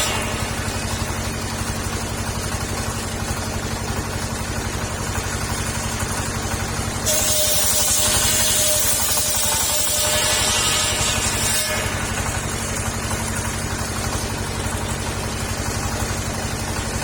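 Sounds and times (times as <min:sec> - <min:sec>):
saw blade cutting wood: 0:00.0 - 0:02.3, 0:05.6 - 0:13.6
petrol engine running: 0:00.0 - 0:17.0.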